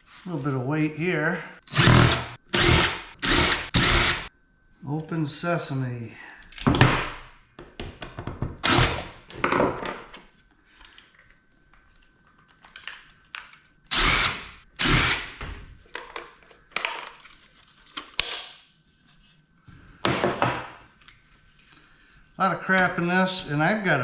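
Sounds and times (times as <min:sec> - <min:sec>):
cordless drill bursts: 0:01.6 - 0:04.3, 0:08.6 - 0:09.2, 0:13.9 - 0:15.4.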